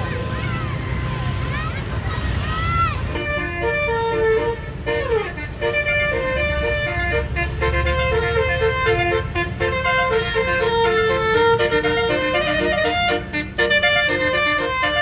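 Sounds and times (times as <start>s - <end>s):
low engine rumble: 0.0s - 15.0s
musical air horn melody: 3.2s - 15.0s.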